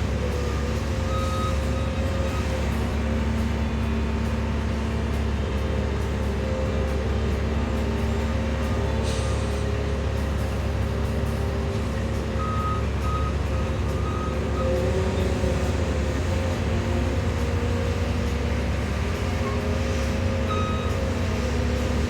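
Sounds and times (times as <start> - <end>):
diesel engine running: 0.0 - 22.0
reverse alarm beeping: 0.2 - 2.6, 12.4 - 15.0, 20.3 - 21.2.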